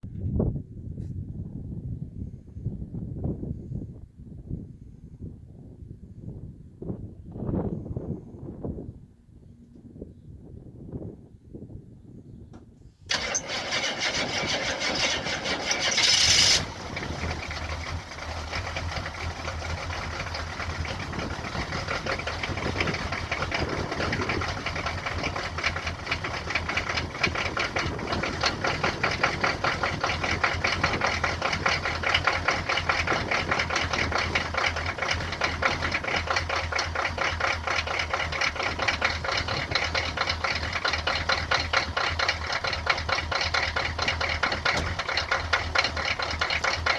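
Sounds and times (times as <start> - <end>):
diesel engine starting and idling: 13.0 - 46.9.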